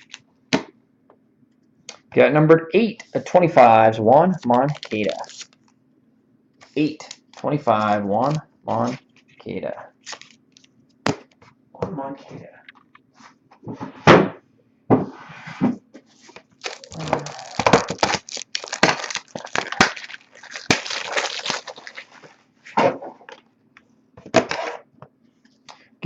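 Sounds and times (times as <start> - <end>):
plastic packaging crinkling: 0.0 - 0.2, 4.4 - 5.7, 10.0 - 10.7, 16.5 - 22.4.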